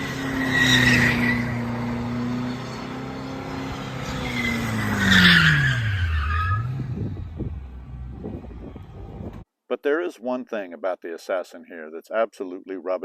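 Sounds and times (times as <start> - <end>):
tyres squealing: 0.0 - 6.8
car engine revving: 0.0 - 9.4.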